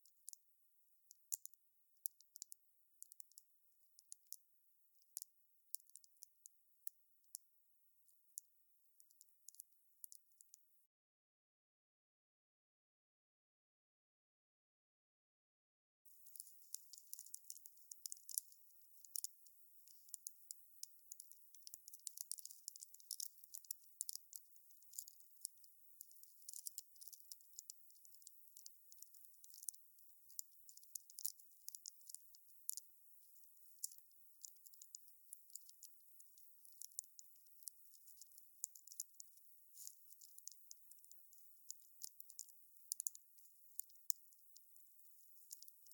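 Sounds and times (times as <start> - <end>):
campfire crackling: 16.1 - 45.9
faint high hiss: 16.1 - 45.9.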